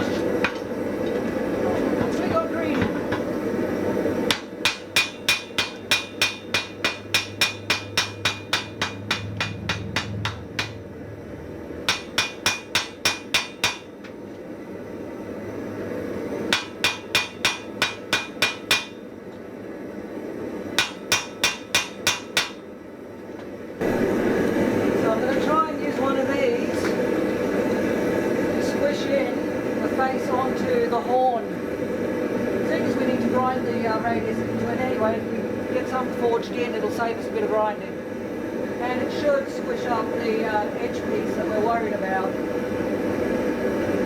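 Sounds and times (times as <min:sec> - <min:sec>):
hammer striking anvil: 0:04.3 - 0:10.9, 0:11.8 - 0:14.0, 0:16.5 - 0:19.0, 0:20.8 - 0:22.6.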